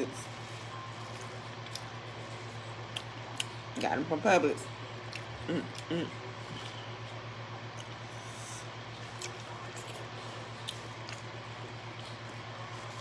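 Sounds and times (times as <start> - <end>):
steady low hum: 0.0 - 13.0
person chewing: 1.0 - 3.6, 5.1 - 6.8, 7.7 - 11.3.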